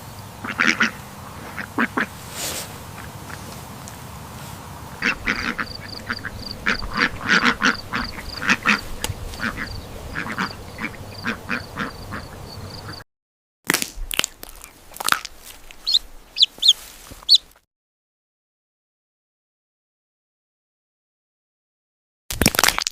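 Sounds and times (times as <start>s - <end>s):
ducks quacking: 0.4s - 13.0s, 15.8s - 17.6s.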